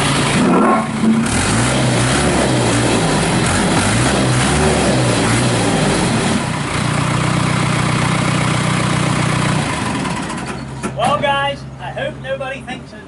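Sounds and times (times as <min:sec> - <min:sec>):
diesel engine running: 0:00.0 - 0:12.9.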